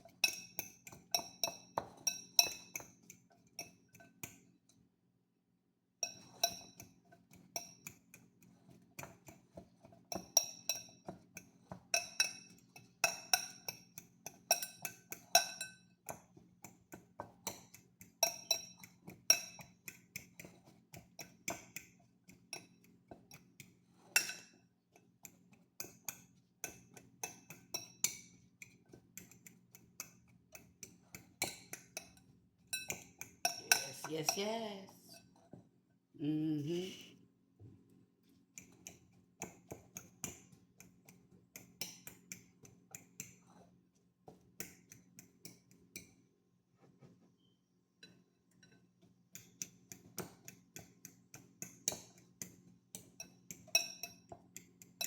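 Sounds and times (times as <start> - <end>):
utensil clinking in glass bowl: 0.1 - 4.3, 10.1 - 16.2, 17.4 - 21.9, 24.1 - 24.6, 30.0 - 35.4, 53.0 - 54.4.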